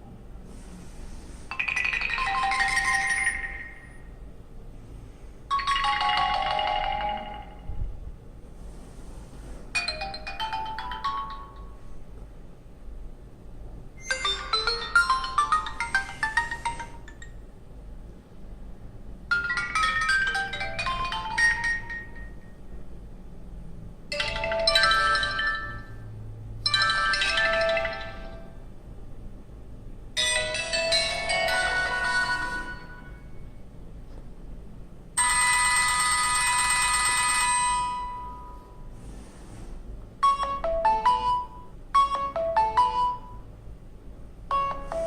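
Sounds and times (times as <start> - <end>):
phone ringtone chiming melodies: 1.5 - 4.1, 5.5 - 7.7, 9.8 - 11.9, 14.0 - 17.3, 19.3 - 22.5, 24.1 - 26.0, 26.6 - 28.5, 30.2 - 33.3, 35.2 - 38.7, 40.2 - 43.4, 44.5 - 45.0.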